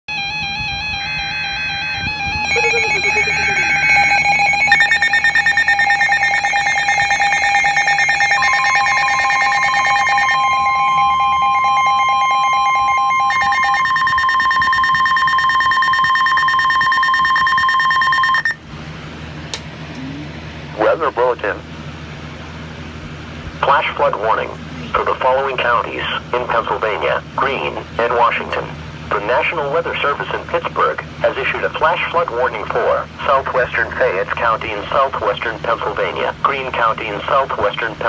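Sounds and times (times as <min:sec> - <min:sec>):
electronic attention tones: 0:00.1 - 0:18.6
warbling data tones: 0:00.4 - 0:18.6.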